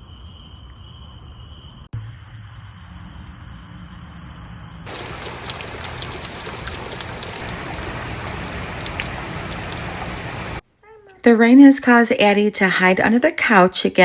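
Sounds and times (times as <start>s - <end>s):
raindrops ticking on hard surface: 4.9s - 10.6s.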